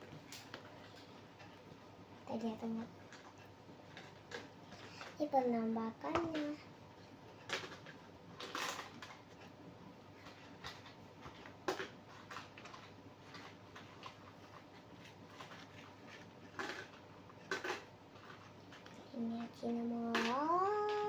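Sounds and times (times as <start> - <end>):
soft rustles of packaging: 6.1 - 21.0.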